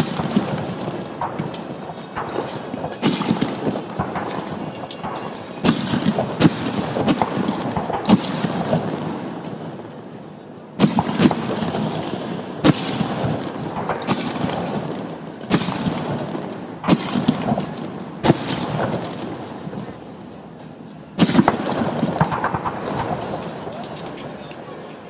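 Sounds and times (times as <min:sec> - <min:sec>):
firework booms with rolling echo: 0:00.0 - 0:10.0, 0:10.8 - 0:20.3, 0:21.1 - 0:23.8.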